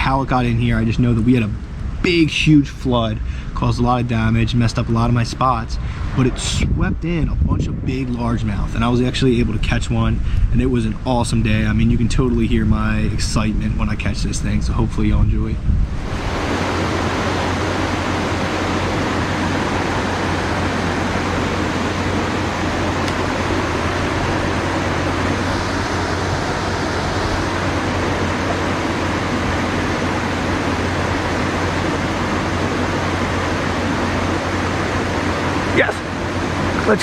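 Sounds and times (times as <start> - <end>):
water rushing over rocks: 16.0 - 37.0.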